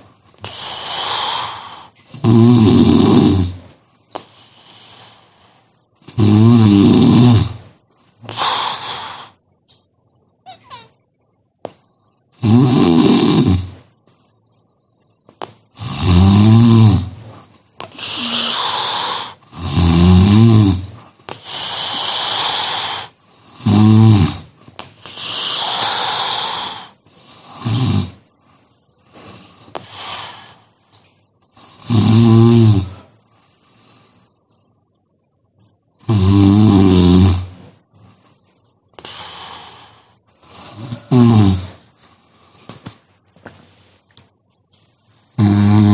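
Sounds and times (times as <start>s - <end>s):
breathy breaths: 0.0s - 2.2s, 3.5s - 6.0s, 7.5s - 9.6s, 17.0s - 19.6s, 20.8s - 23.7s, 24.6s - 31.9s, 32.8s - 34.7s, 37.4s - 45.4s
person snoring heavily: 0.4s - 3.7s, 6.1s - 7.7s, 8.3s - 9.4s, 12.4s - 13.8s, 15.8s - 28.2s, 29.2s - 30.7s, 31.6s - 33.1s, 36.0s - 37.6s, 39.0s - 41.9s, 45.3s - 45.9s.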